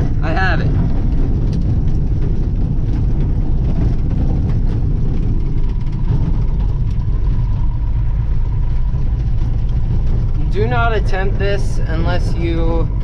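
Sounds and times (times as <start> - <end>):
truck engine running: 0.0 - 13.0.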